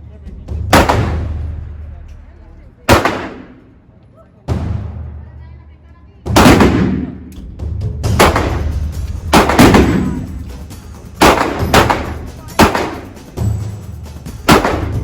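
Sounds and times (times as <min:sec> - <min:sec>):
gunshots with reverberation: 0:00.6 - 0:01.9, 0:02.9 - 0:03.8, 0:06.3 - 0:07.5, 0:08.1 - 0:13.3, 0:14.4 - 0:15.0.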